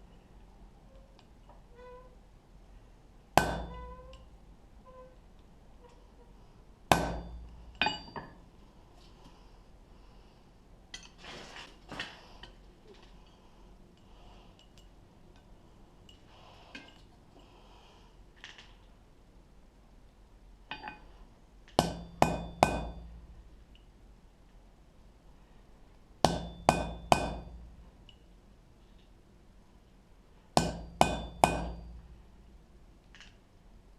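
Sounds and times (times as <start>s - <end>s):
hammer striking steel: 3.4s - 4.2s, 6.9s - 8.4s, 21.8s - 23.3s, 26.2s - 27.7s, 30.6s - 32.1s.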